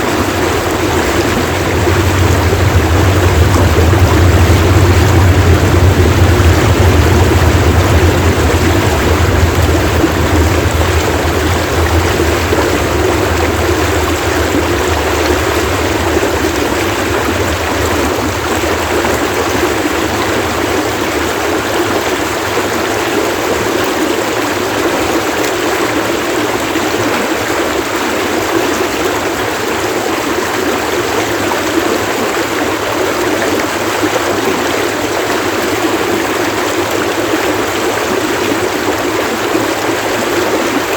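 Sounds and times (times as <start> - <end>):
low rumble: 0.0 - 23.7
stream water splashing: 0.0 - 40.9.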